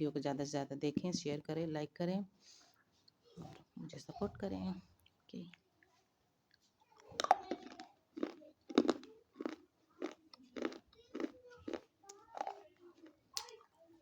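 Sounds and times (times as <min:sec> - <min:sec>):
crunchy chewing: 0:06.5 - 0:14.0
crunchy bite: 0:07.2 - 0:12.6.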